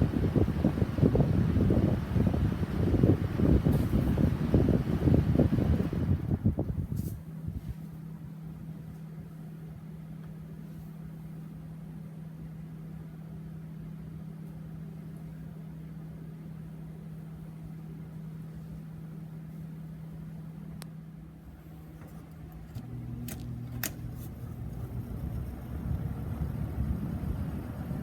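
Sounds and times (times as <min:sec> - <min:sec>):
box fan motor humming: 0:00.0 - 0:07.6, 0:21.4 - 0:28.0.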